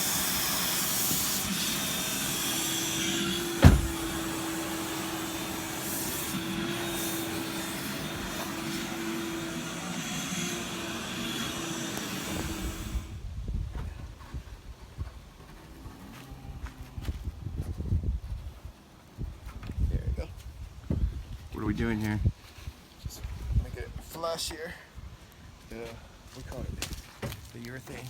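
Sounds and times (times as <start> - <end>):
vacuum cleaner running: 0.0 - 13.2
sharp knock: 3.6 - 4.0.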